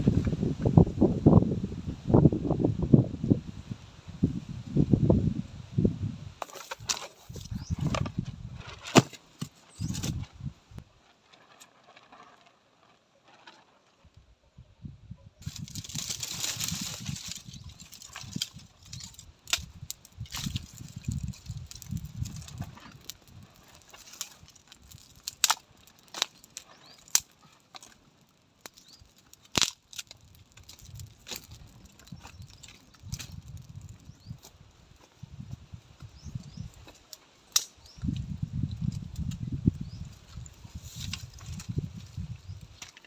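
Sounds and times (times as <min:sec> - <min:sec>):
wind buffeting microphone: 0:00.0 - 0:06.4, 0:07.3 - 0:08.8, 0:09.8 - 0:10.8, 0:14.6 - 0:23.8, 0:30.3 - 0:36.9, 0:37.8 - 0:42.8
sharp cracks and clicks: 0:15.6 - 0:34.0, 0:37.5 - 0:37.9.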